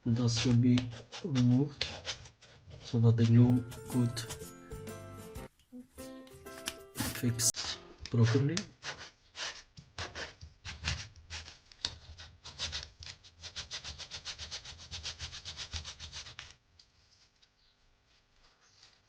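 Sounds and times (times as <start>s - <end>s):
sandpaper rubbing on shoe sole: 0.4s - 4.6s, 6.4s - 16.5s.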